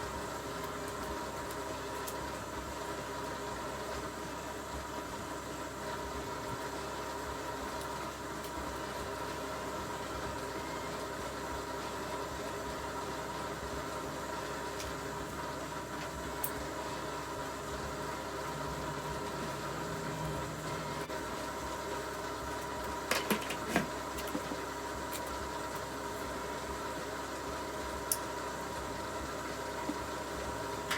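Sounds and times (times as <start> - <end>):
machine humming: 8.8 - 30.9.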